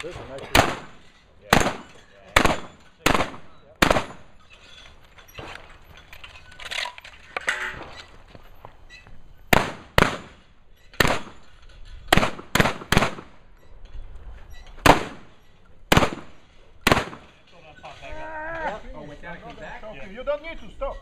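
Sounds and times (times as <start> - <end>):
shotgun shots: 0.5 - 4.3, 9.5 - 11.4, 12.1 - 13.4, 14.8 - 17.4.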